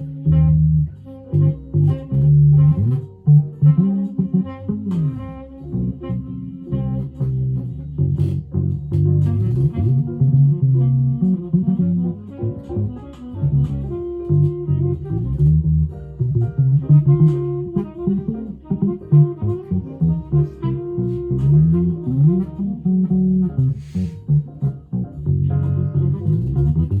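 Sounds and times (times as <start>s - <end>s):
plucked low guitar notes: 0.0s - 27.0s.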